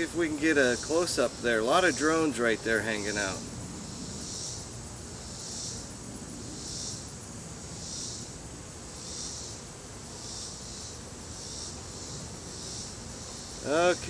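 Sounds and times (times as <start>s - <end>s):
bees humming: 0.0s - 5.9s, 9.2s - 14.0s
pulsing high-pitched insect call: 0.0s - 14.0s.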